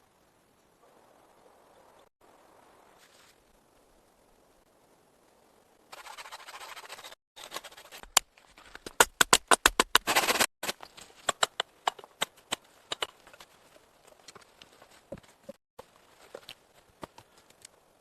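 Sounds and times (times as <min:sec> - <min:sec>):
rustling: 0:02.9 - 0:03.9.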